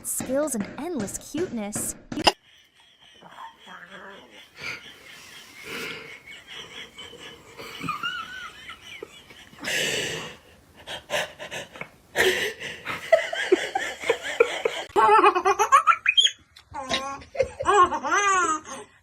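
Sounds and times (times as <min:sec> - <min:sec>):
baby laughing: 0:02.2 - 0:08.8.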